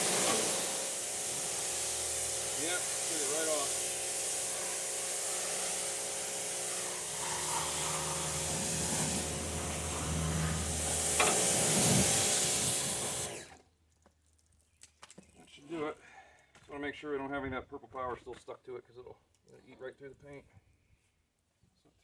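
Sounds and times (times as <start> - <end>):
water spraying on metal: 0.0 - 13.5.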